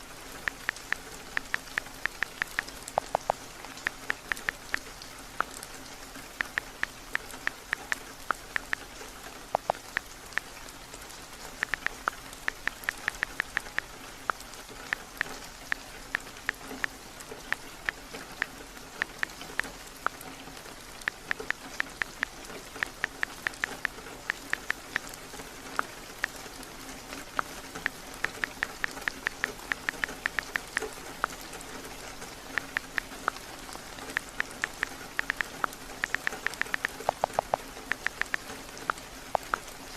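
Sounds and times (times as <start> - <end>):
rain falling on a roof: 0.0 - 39.9
typing taps on phone keyboard: 0.5 - 4.8, 6.4 - 8.9, 9.6 - 10.5, 11.6 - 15.8, 27.4 - 31.4, 34.1 - 39.6.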